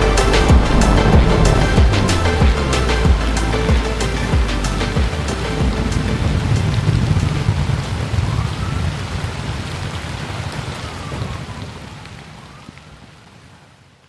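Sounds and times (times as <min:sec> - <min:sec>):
deep low rumble: 0:00.0 - 0:07.8
heavy rainfall: 0:00.0 - 0:14.0.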